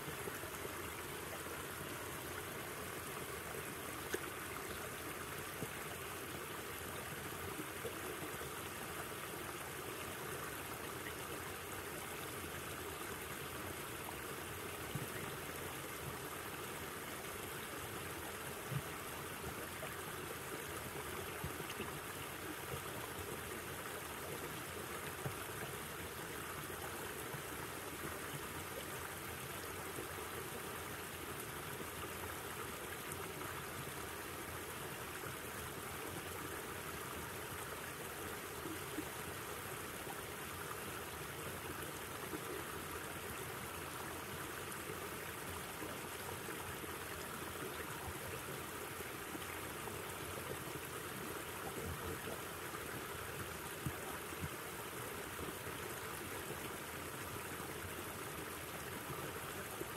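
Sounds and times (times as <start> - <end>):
faint ticks: 3.9 - 4.8.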